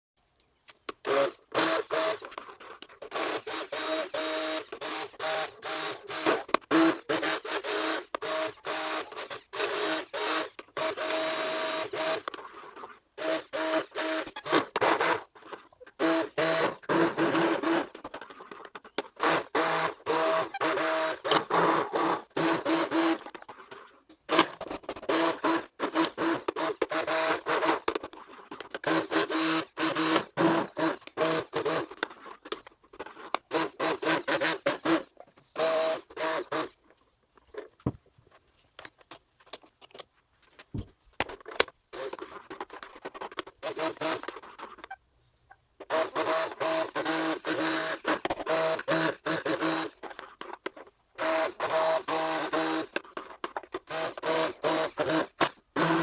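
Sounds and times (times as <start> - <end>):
stick blender whirring: 1.0 - 2.4, 3.0 - 12.5, 13.2 - 15.3, 16.0 - 18.3, 19.2 - 23.4, 24.3 - 36.8, 43.6 - 44.8, 45.8 - 50.3, 51.2 - 56.0.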